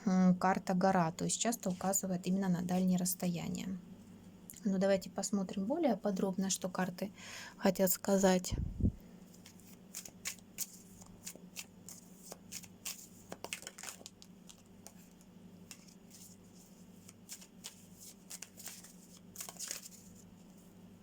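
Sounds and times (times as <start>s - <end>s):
steady low hum: 0.0s - 21.0s
cards clicking and rustling: 9.4s - 20.2s.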